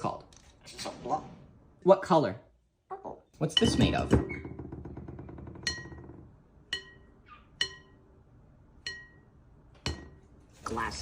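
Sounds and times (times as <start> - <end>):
glass object clinking: 5.6 - 8.2, 8.8 - 10.3.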